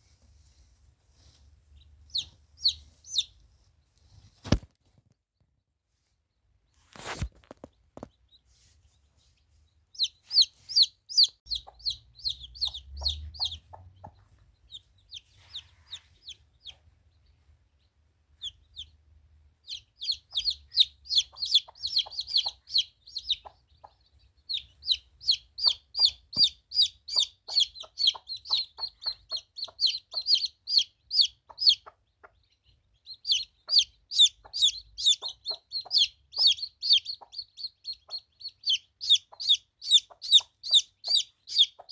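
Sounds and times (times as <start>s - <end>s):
chickens calling: 2.1s - 3.4s, 10.0s - 16.8s, 19.6s - 41.9s.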